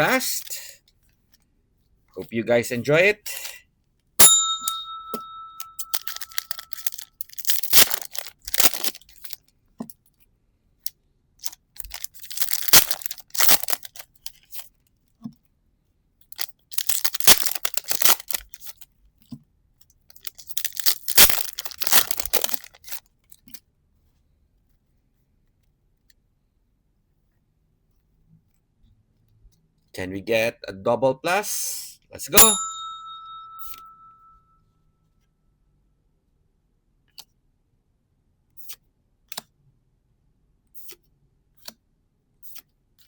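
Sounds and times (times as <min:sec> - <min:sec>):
sharp click with ringing tone: 0:04.2 - 0:06.3, 0:32.4 - 0:34.4
card packs tearing open: 0:05.9 - 0:09.4, 0:11.4 - 0:14.6, 0:16.4 - 0:18.8, 0:20.2 - 0:23.0
foil wrappers crinkling: 0:05.9 - 0:09.4, 0:11.4 - 0:14.6, 0:16.4 - 0:18.8, 0:20.2 - 0:23.0.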